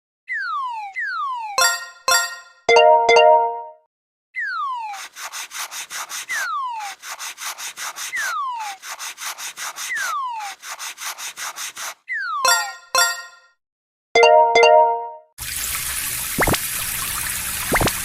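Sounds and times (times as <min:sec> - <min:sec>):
cartoon falling whistle tone: 0:00.3 - 0:01.9, 0:12.1 - 0:12.8
fast scratchy rattle: 0:05.0 - 0:12.0.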